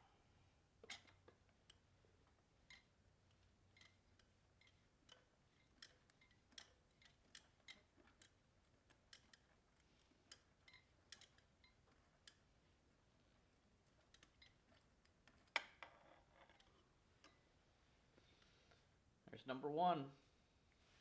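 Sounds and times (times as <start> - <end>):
wrench clicking on metal: 2.6 - 12.4.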